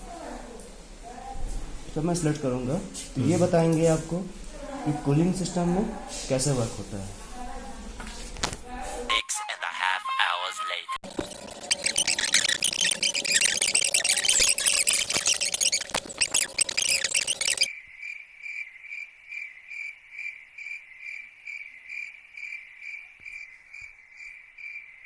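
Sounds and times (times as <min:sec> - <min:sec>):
insect chirping trill: 0:11.0 - 0:25.0.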